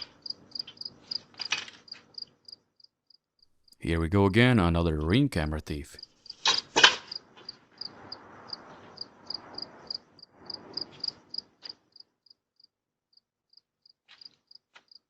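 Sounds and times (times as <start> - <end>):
cricket chirping: 6.0 - 14.7.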